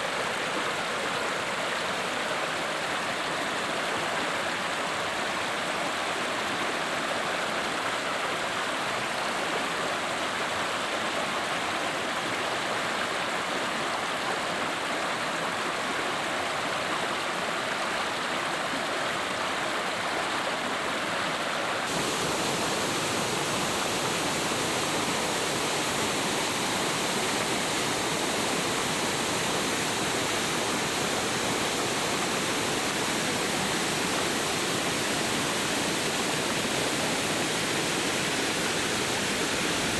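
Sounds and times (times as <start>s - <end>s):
running water: 21.8s - 39.9s
heavy rain: 21.9s - 39.9s.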